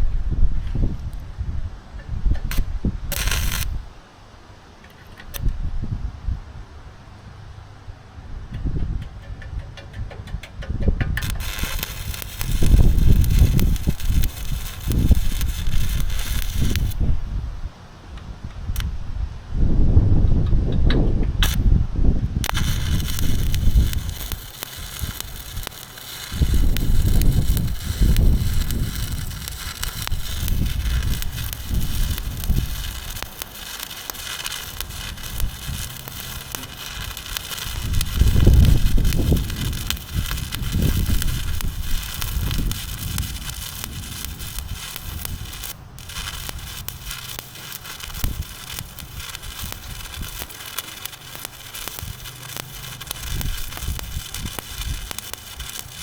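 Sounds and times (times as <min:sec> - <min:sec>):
welding arc crackling: 0:03.1 - 0:03.9, 0:11.2 - 0:17.2, 0:21.4 - 0:21.6, 0:22.4 - 0:56.0
low rumbling gusts: 0:10.6 - 0:50.4.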